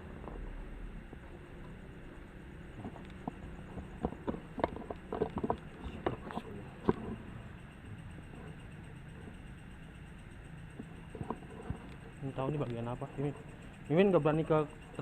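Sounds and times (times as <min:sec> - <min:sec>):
footsteps on rubble: 0:02.7 - 0:07.2.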